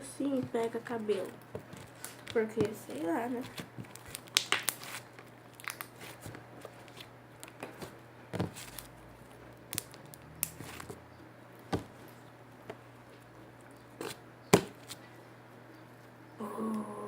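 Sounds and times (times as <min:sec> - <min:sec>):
slime crackling and popping: 0:03.4 - 0:07.7, 0:09.6 - 0:10.9.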